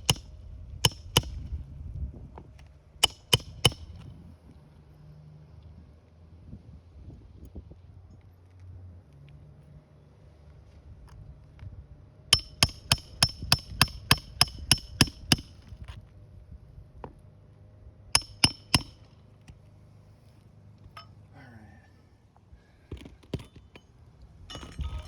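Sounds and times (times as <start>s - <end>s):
hammer striking metal: 3.0s - 3.9s, 12.4s - 15.5s, 18.2s - 19.1s.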